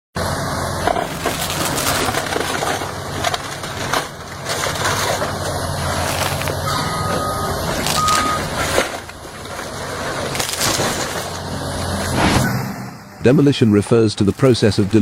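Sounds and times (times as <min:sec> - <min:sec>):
low engine drone: 0:00.2 - 0:14.9
material cracking and splintering: 0:00.9 - 0:06.6, 0:07.7 - 0:11.4.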